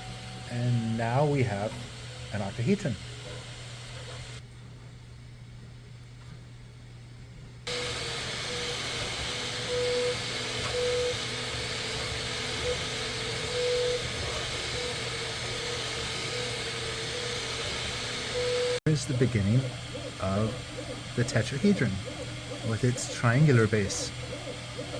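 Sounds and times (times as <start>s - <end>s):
fan hiss and low hum: 0.0s - 24.9s
stepper motors whining: 7.7s - 24.9s.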